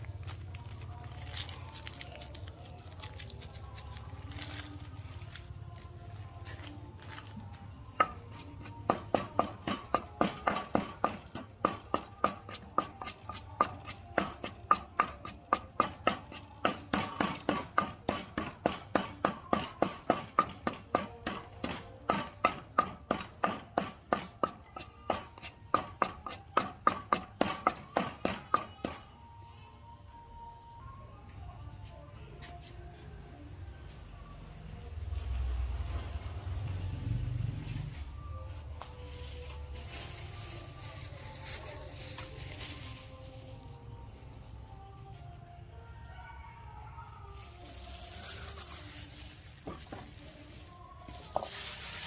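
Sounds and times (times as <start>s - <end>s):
background music with percussive beat: 7.9s - 29.0s.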